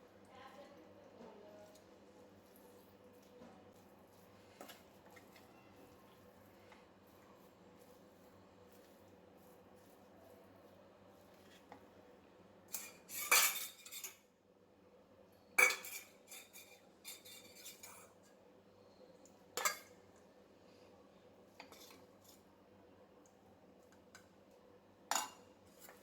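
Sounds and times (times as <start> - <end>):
metal spoon scraping a dish: 12.7 - 14.2, 15.6 - 18.2, 21.6 - 22.5, 25.1 - 26.0.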